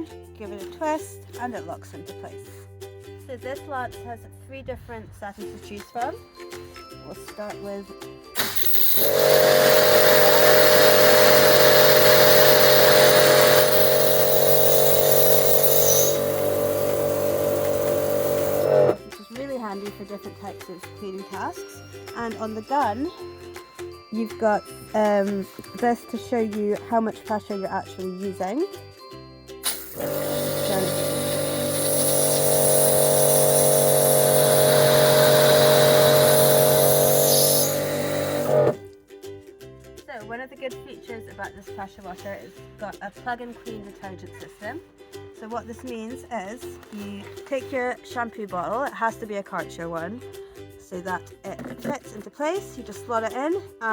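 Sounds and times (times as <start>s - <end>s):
pressure washer motor hum: 8.4s - 19.0s, 29.6s - 38.8s.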